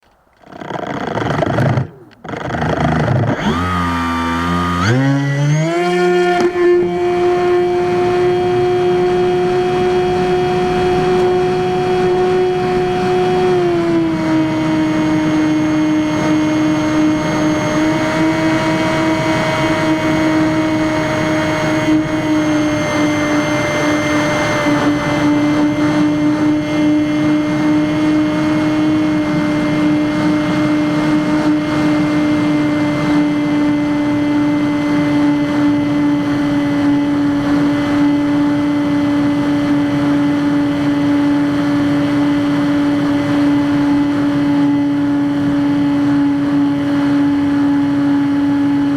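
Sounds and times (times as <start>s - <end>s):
electric motor and propeller whine: 0.0s - 48.9s
rushing air: 6.8s - 19.4s.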